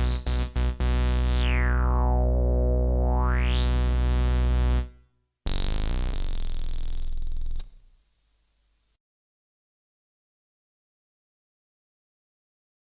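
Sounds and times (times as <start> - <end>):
buzzy synth note with whistle: 0.0 - 4.9
synthesizer bass note: 0.0 - 7.6.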